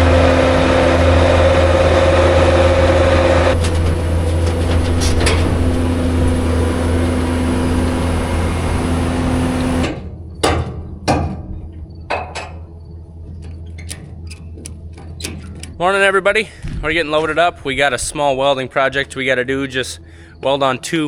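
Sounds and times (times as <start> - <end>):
engine hum: 0.0 - 21.0
sharp knocks and clanks: 3.5 - 6.3, 9.6 - 12.7, 13.3 - 15.8.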